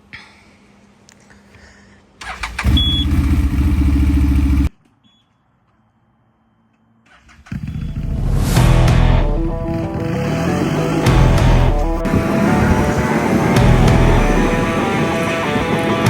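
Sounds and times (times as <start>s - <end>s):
engine cranking and running: 2.2s - 4.7s, 7.1s - 15.8s
short beep: 2.7s - 3.1s
loud swelling sound: 7.9s - 16.0s.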